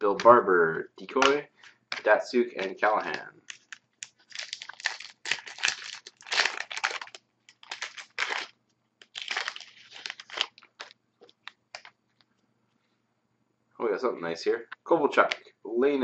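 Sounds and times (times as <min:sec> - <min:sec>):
cards being handled: 0:01.1 - 0:12.3
wrapper crinkling and tearing: 0:02.8 - 0:12.0.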